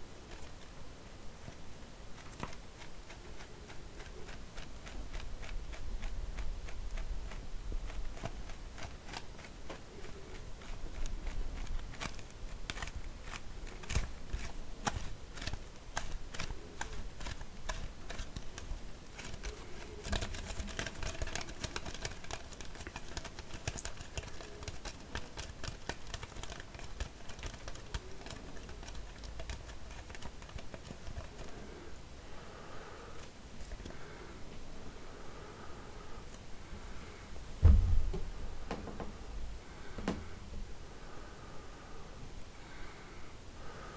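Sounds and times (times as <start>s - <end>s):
plastic bottle tapped and crinkled: 6.0s - 31.5s.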